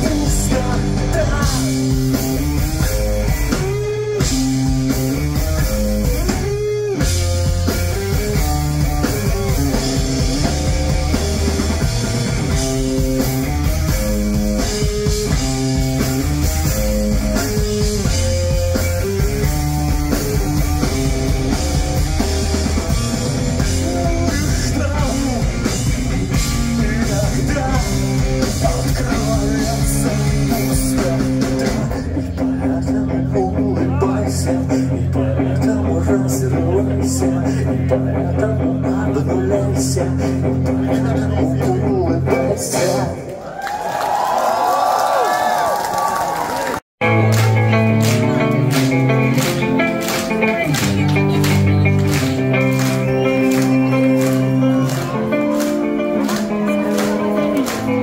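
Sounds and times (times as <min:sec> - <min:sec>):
drum kit: 0:00.0 - 0:33.1, 0:47.0 - 0:58.0
bass guitar: 0:00.0 - 0:43.3, 0:47.0 - 0:58.0
distorted electric guitars: 0:00.0 - 0:43.3, 0:47.0 - 0:58.0.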